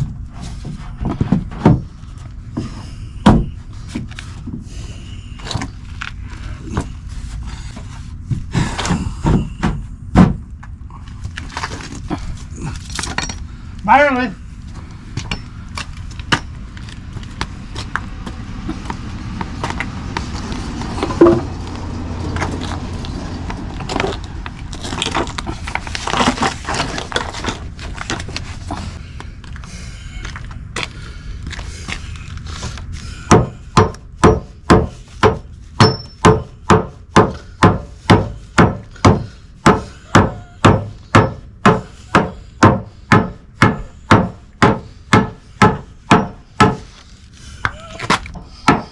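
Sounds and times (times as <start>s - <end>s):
low rumble: 0.0s - 35.8s
hammer blows on wood: 33.2s - 46.9s.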